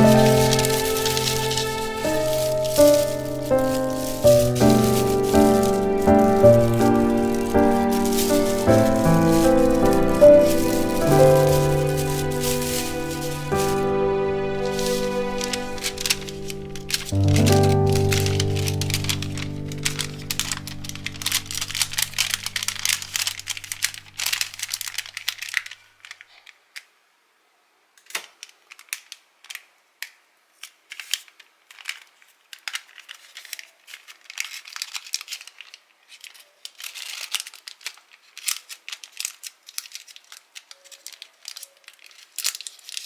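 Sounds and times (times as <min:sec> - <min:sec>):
background music: 0:00.0 - 0:23.7
packaging crinkling and rustling: 0:00.0 - 0:26.9, 0:28.0 - 0:43.0.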